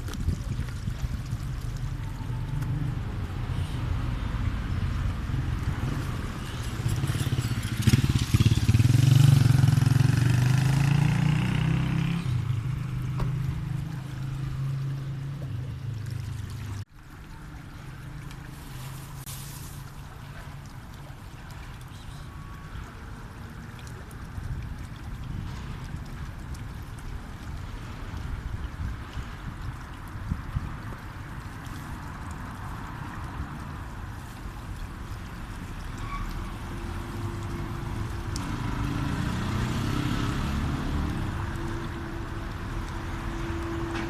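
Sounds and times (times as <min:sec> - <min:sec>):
vehicle engine passing: 0:02.3 - 0:16.8, 0:36.5 - 0:44.0.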